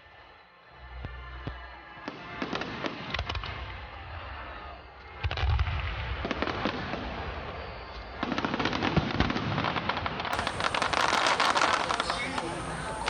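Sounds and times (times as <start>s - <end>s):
fireworks crackling pops: 2.6s - 4.1s, 5.1s - 13.0s
fireworks booming: 5.2s - 13.0s.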